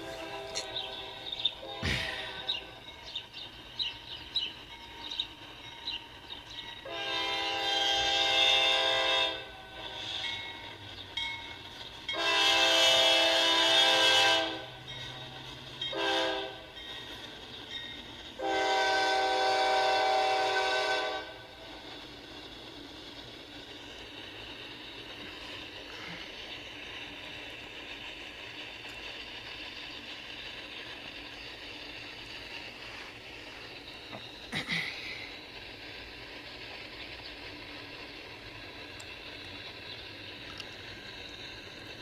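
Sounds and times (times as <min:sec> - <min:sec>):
locomotive air horn blasts: 0:00.0 - 0:02.7, 0:06.8 - 0:10.3, 0:12.1 - 0:14.8, 0:15.9 - 0:16.7, 0:18.4 - 0:21.5
low rumble of train: 0:00.0 - 0:42.0
birds chirping: 0:00.1 - 0:06.9, 0:10.3 - 0:12.2, 0:16.8 - 0:18.2.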